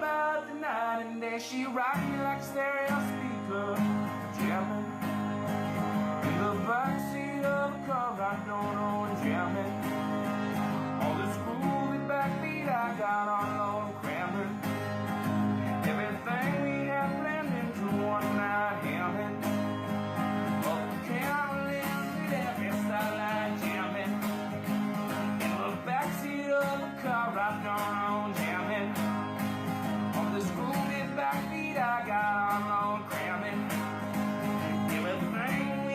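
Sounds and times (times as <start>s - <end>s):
acoustic guitar strumming: 0.0s - 35.9s
person singing: 0.0s - 35.9s.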